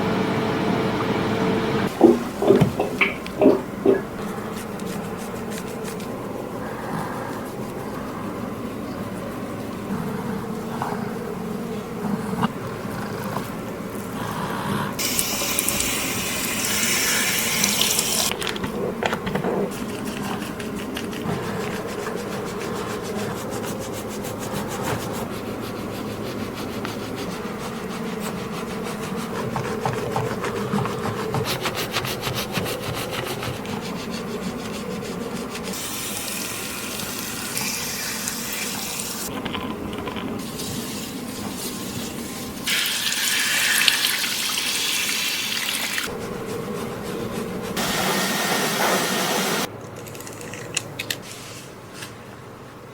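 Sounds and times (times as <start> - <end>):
fingers scrubbing lathered scalp: 2.0 - 8.2, 19.6 - 39.3, 46.0 - 49.7
running water rinsing hair: 15.0 - 18.3, 35.5 - 39.3, 42.5 - 46.4, 47.3 - 49.7.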